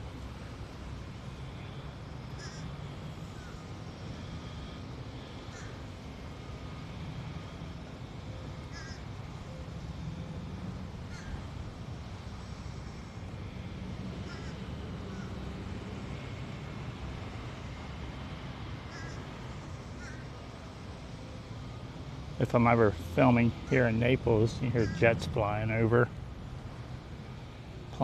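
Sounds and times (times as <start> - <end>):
birds giving short calls: 2.4 - 2.7, 8.7 - 9.0, 14.3 - 15.3, 18.9 - 19.2, 20.0 - 20.3, 24.7 - 25.2.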